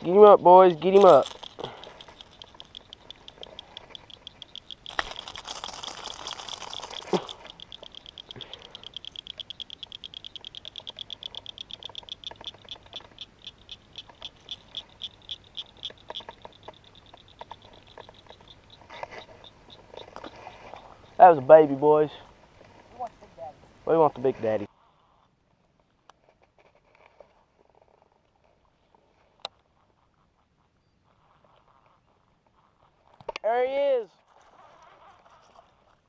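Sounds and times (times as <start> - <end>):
fishing reel clicking: 0.8 - 19.3.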